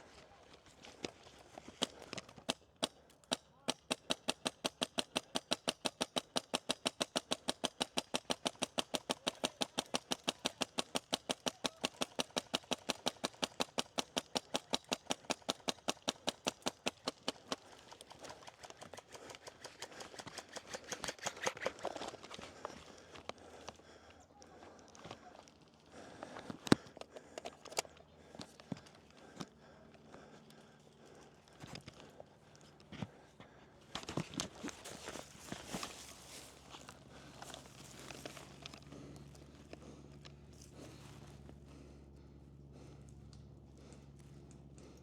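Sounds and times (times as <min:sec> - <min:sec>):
airsoft rifle firing: 0:02.5 - 0:17.7.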